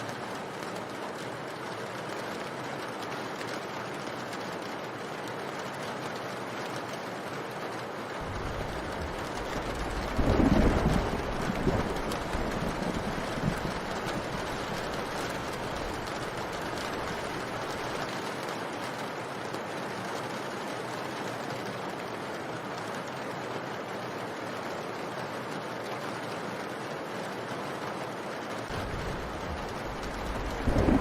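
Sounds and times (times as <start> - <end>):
steady rain: 0.0 - 31.0
low rumble: 28.7 - 31.0.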